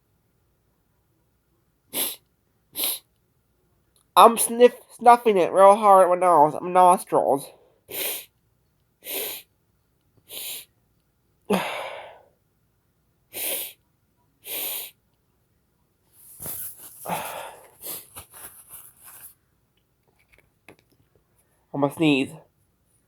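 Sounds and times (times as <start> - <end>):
person sniffing hard: 1.9 - 3.1, 7.9 - 8.3, 9.0 - 9.5, 10.2 - 10.7, 13.3 - 13.8, 14.4 - 15.0, 16.3 - 18.8.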